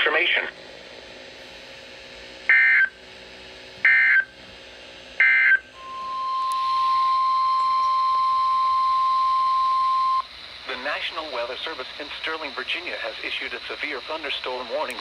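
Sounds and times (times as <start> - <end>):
steady single-pitch alert tone: 5.2 - 10.3.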